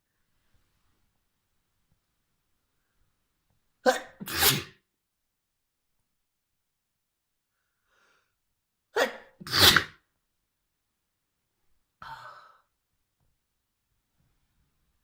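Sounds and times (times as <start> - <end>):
person sneezing: 3.9 - 4.8, 8.9 - 10.1
faint breath: 7.5 - 8.4.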